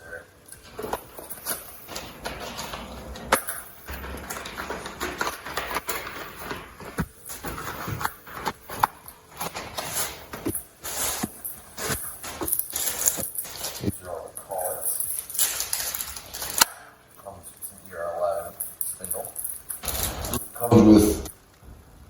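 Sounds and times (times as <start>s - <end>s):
packaging crinkling: 0.6s - 16.9s, 19.8s - 20.7s.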